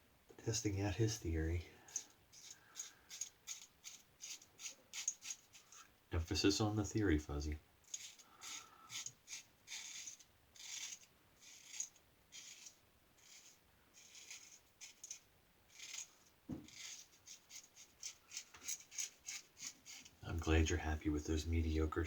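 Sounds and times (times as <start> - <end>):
razor scraping stubble: 1.9 - 5.8, 7.9 - 20.6.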